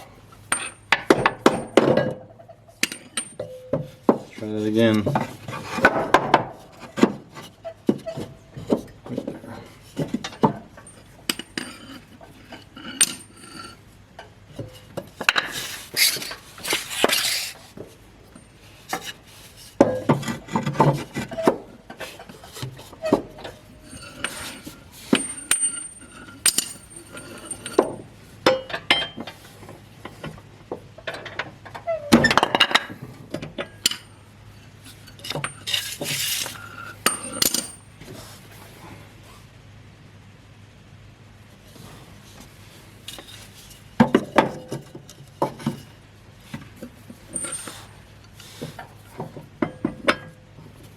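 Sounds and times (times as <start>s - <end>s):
tools scraping on metal: 9.8s - 29.6s, 34.9s - 38.3s, 47.1s - 50.2s
tools clinking on metal: 23.9s - 29.2s, 37.0s - 37.8s, 47.3s - 47.9s.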